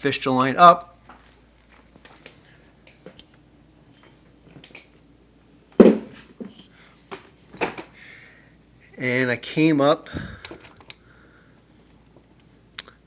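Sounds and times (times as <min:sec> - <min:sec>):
loud knock: 0:05.8 - 0:06.2.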